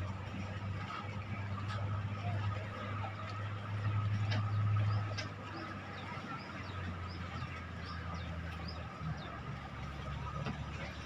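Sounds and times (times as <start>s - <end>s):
boat engine droning: 0.0s - 11.0s
birds chirping: 4.1s - 10.3s.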